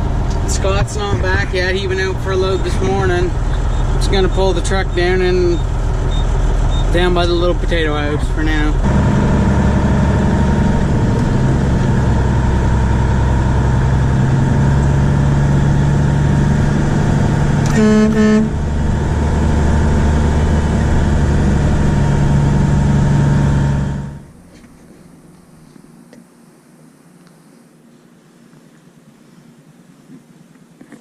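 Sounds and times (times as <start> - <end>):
truck engine running: 0.0 - 24.6
truck horn toots: 17.6 - 18.6.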